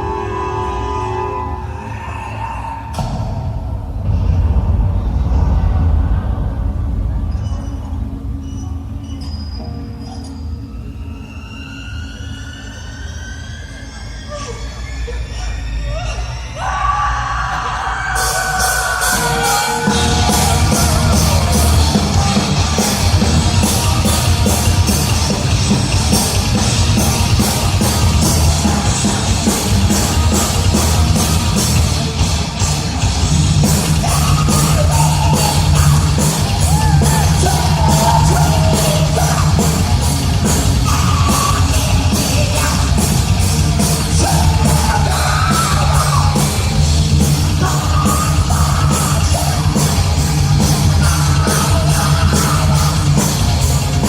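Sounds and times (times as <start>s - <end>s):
heavy metal band playing live: 0.0s - 8.5s, 16.6s - 54.0s.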